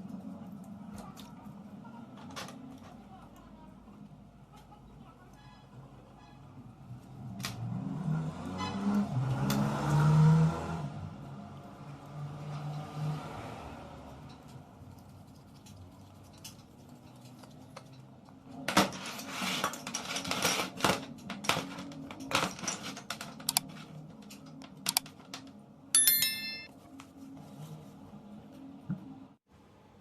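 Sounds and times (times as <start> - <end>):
high metallic ring: 26.0 - 26.7
metal tools clinking on workbench: 26.0 - 26.7.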